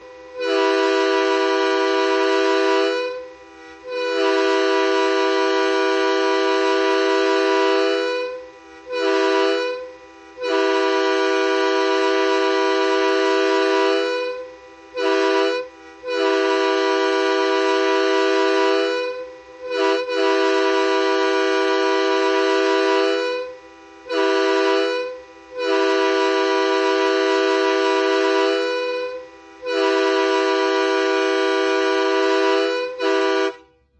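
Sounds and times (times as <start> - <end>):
truck air horn blasts: 0.0 - 33.9.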